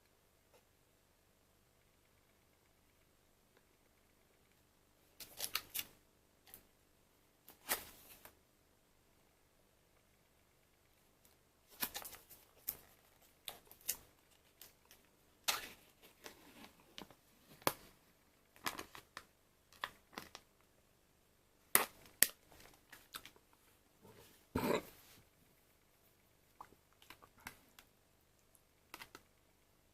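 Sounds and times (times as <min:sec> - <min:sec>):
plastic pot clicks and crinkles: 0:11.7 - 0:17.8, 0:18.5 - 0:20.6, 0:21.7 - 0:23.6, 0:28.9 - 0:29.3
crisp snaps: 0:21.7 - 0:23.4, 0:26.6 - 0:29.3.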